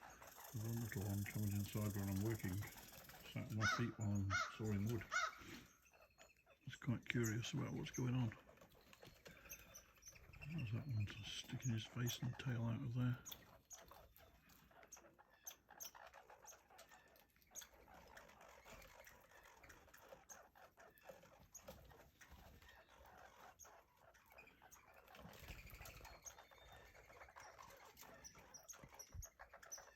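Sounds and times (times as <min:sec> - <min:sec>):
squirrels scrabbling and gnawing: 0:00.0 - 0:29.9.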